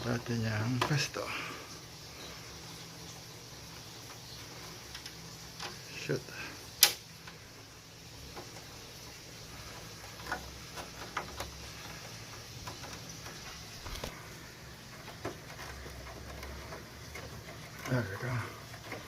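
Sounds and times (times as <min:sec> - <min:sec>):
plastic parts clicking and knocking: 0:00.0 - 0:01.2, 0:03.9 - 0:06.0, 0:06.7 - 0:07.4, 0:08.1 - 0:19.0.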